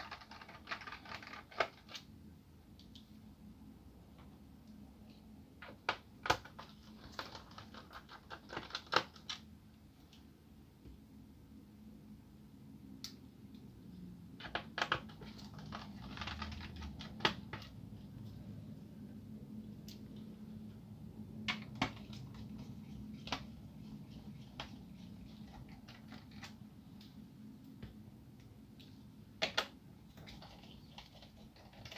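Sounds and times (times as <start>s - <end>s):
low steady hum: 9.3s - 31.9s.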